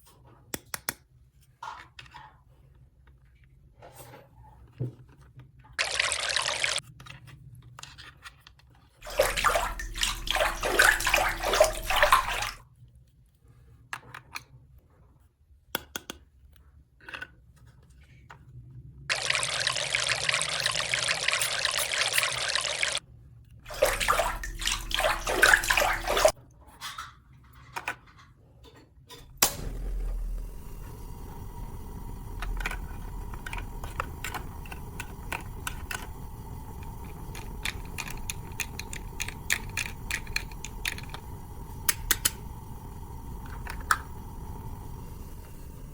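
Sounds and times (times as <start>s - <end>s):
water pouring: 5.8s - 6.8s, 9.0s - 12.6s, 19.1s - 23.0s, 23.7s - 26.4s, 29.2s - 45.9s
faint steady hum: 9.0s - 12.6s, 29.1s - 45.9s.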